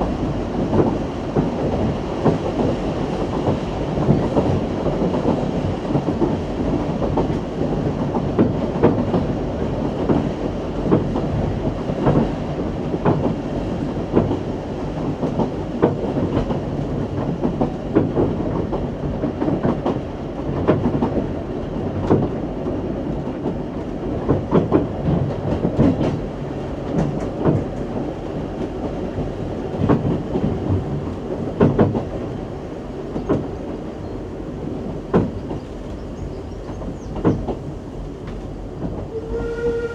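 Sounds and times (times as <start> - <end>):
train rumbling along track: 0.0 - 39.9
wheels clicking over rail joints: 34.6 - 39.9.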